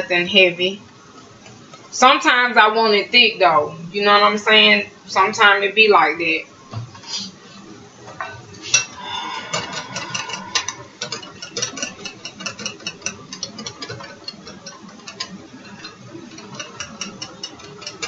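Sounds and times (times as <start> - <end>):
metal utensil clicking against cookware: 8.8 - 18.0.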